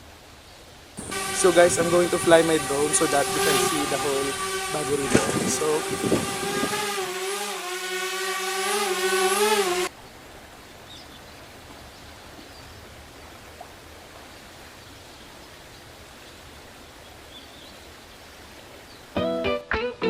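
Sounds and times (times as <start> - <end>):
drone propellers buzzing: 1.0 - 9.9.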